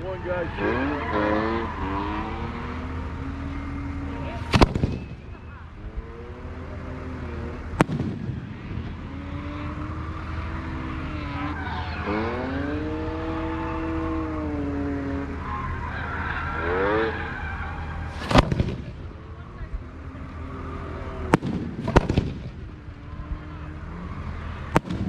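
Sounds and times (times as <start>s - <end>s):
vehicle engine revving: 0.0s - 25.0s
firework bang: 4.5s - 5.4s, 7.8s - 9.0s, 18.1s - 19.1s, 21.3s - 22.8s.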